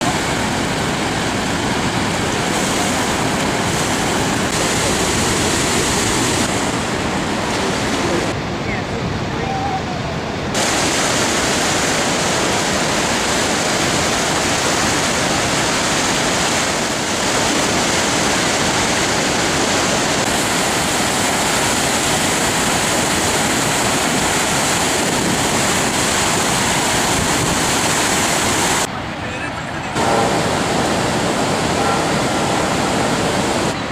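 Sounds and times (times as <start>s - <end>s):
waterfall rushing: 0.0s - 33.9s.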